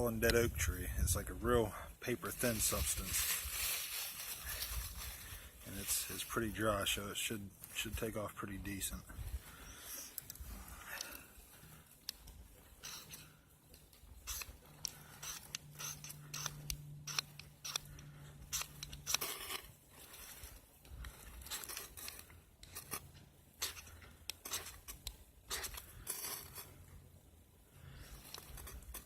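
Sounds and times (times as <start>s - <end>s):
striker scraping ferro rod: 12.8s - 13.3s, 14.2s - 20.3s, 21.4s - 26.8s, 28.1s - 29.0s.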